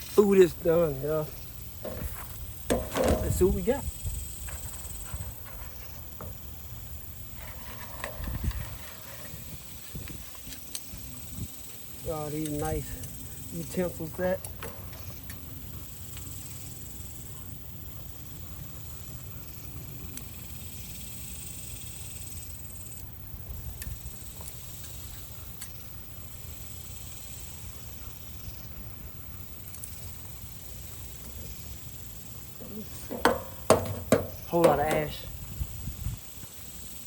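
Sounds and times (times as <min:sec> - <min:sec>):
high hissing buzz: 0:00.0 - 0:37.0.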